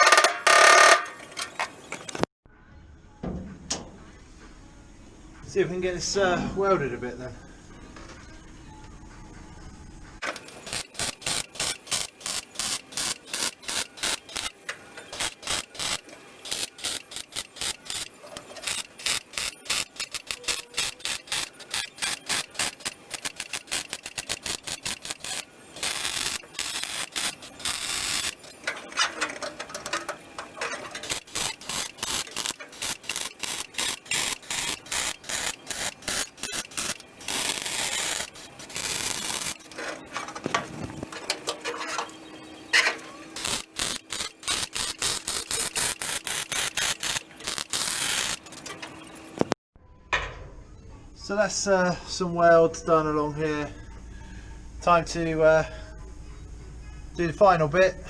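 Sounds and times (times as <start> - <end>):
welding arc crackling: 0.0 - 2.3, 10.2 - 49.6.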